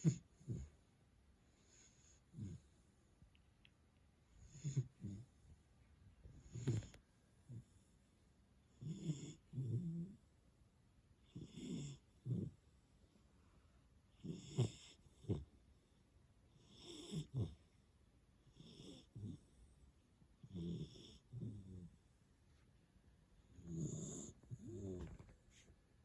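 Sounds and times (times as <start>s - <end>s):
puppy snoring: 0.0s - 0.8s, 1.5s - 2.9s, 4.4s - 5.4s, 6.3s - 8.0s, 8.7s - 10.3s, 11.2s - 12.7s, 14.1s - 15.6s, 16.5s - 17.8s, 18.4s - 19.8s, 20.4s - 22.1s, 23.4s - 25.7s.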